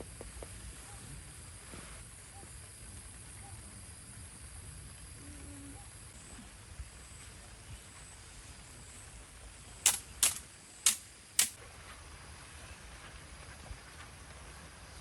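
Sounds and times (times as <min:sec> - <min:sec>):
sharp clicks: 0:09.8 - 0:11.6.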